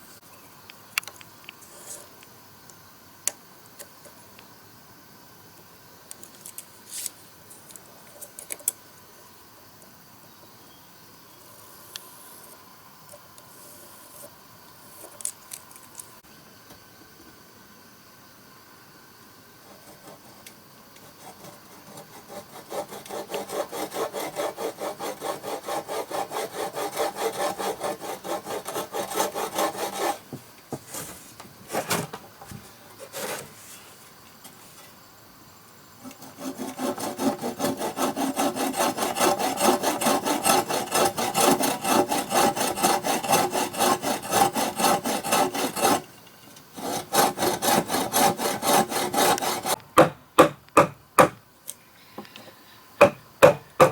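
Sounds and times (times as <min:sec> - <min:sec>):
hand tool rasping wood: 0:21.1 - 0:30.3, 0:36.0 - 0:46.1, 0:46.8 - 0:49.8
knocks: 0:50.0 - 0:51.4, 0:53.0 - 0:53.9.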